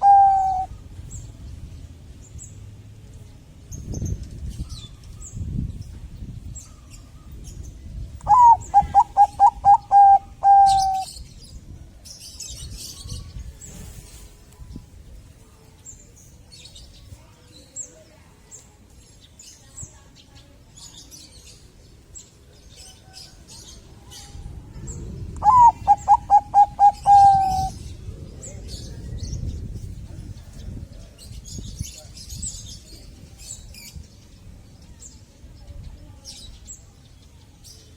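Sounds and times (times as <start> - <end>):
dove cooing: 0.0 - 0.7, 8.3 - 11.1, 25.4 - 27.8.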